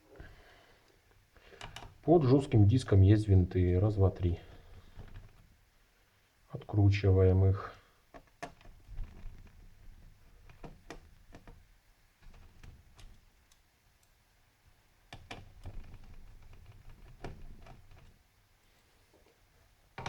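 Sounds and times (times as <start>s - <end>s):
laptop handling noise: 1.5s - 2.1s, 8.1s - 13.3s, 15.1s - 18.2s.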